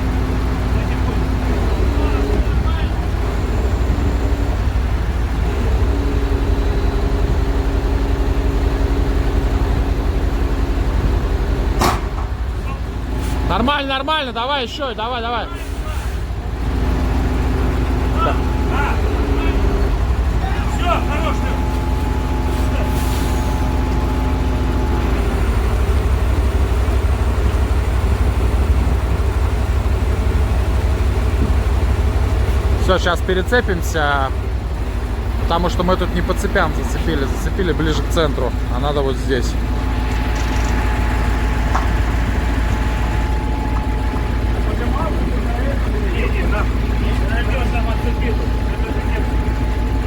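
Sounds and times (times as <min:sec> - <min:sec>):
diesel engine running: 0:00.0 - 0:50.0
steady hum: 0:39.7 - 0:50.0.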